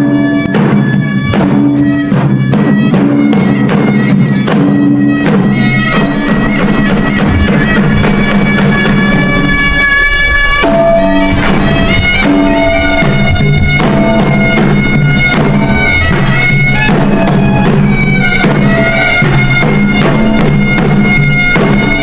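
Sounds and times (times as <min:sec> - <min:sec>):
drum strokes: 0:00.0 - 0:22.0
reedy wind instrument melody: 0:00.0 - 0:22.0
held low drone notes: 0:05.4 - 0:20.0.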